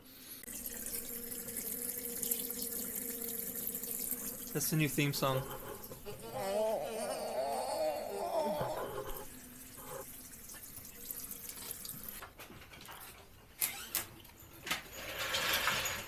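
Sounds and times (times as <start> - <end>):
liquid trickling: 0.4 - 12.3.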